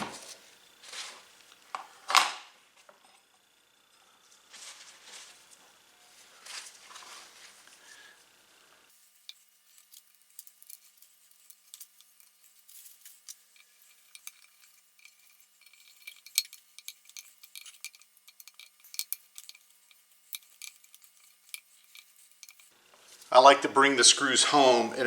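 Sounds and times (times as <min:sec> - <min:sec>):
small metal hardware clinking: 0:09.2 - 0:22.7.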